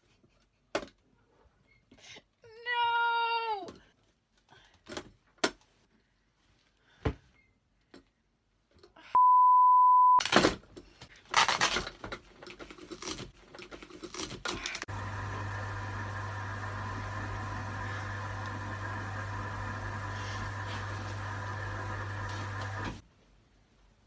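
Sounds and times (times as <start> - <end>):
electronic beep: 9.2 - 10.2
electrical hum: 14.9 - 23.0.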